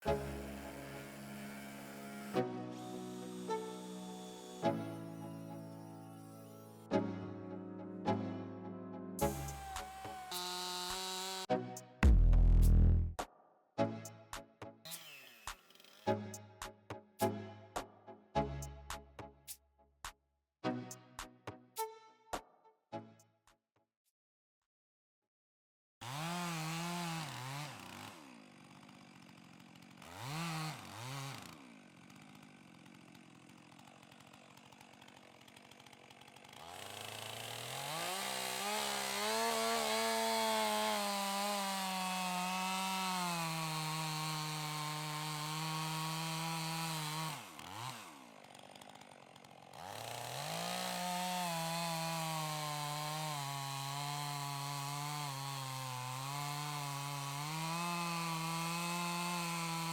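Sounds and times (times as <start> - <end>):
chainsaw revving and cutting wood: 0.0 - 7.0, 9.2 - 13.2, 26.0 - 59.9.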